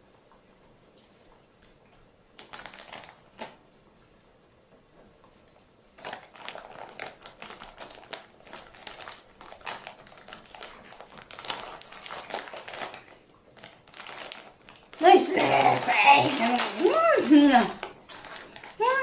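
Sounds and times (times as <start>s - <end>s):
plastic wrapper crinkling: 2.4s - 3.6s, 6.0s - 19.0s.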